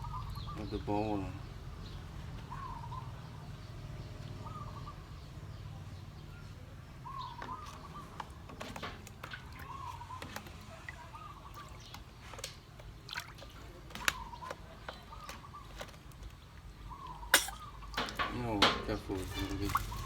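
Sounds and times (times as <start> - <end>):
water splashing and dripping: 7.4 - 20.0.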